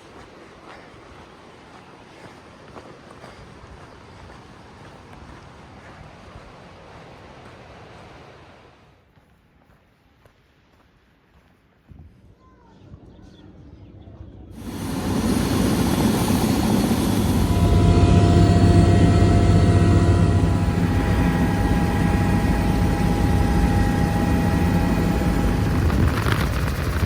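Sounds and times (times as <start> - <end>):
helicopter flying close by: 13.4 - 27.0.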